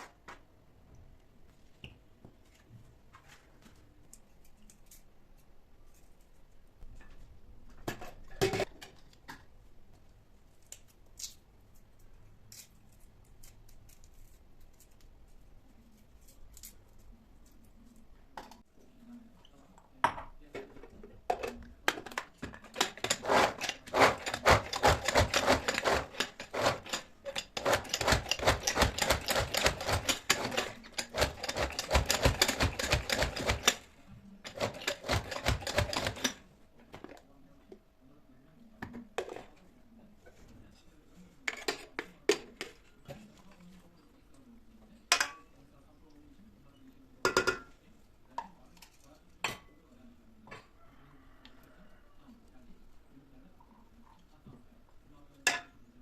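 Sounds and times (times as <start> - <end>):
kitchen handling noises: 7.8 - 9.5, 20.0 - 37.2.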